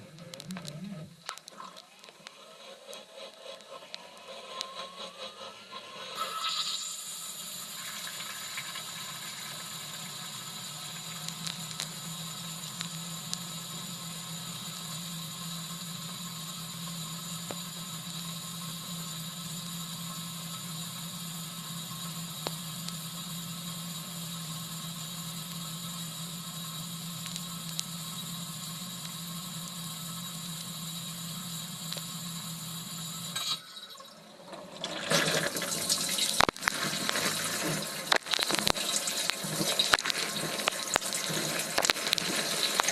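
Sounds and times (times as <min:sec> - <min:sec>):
water hissing: 0:35.0 - 0:42.9
water spraying and splashing: 0:35.0 - 0:42.9.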